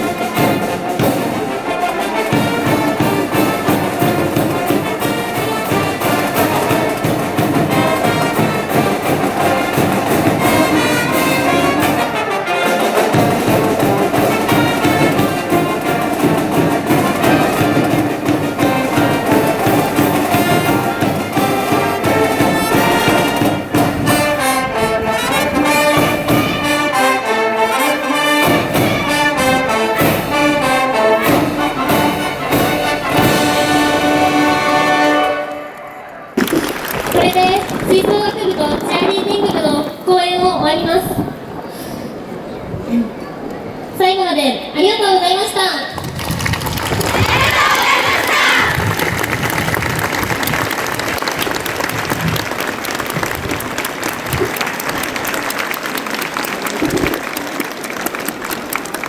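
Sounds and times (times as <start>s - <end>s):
drums keeping a steady beat: 0.0s - 35.5s
brass band playing: 0.0s - 38.1s, 47.2s - 56.0s.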